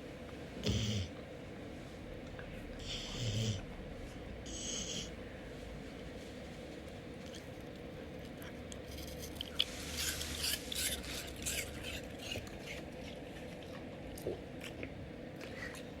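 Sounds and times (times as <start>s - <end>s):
dog chewing crunchily: 7.2s - 16.0s.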